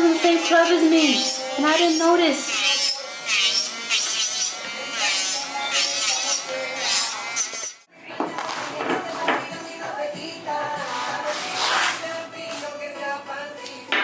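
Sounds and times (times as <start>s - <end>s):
electric nail drill buzzing: 0.0s - 7.9s
background music: 0.0s - 14.0s.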